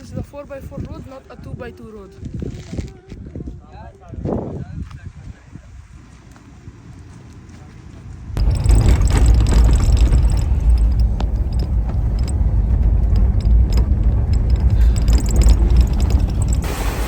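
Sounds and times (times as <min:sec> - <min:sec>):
vehicle driving on rough road: 0:05.4 - 0:17.0
rattles and knocks from bumps: 0:08.4 - 0:16.8.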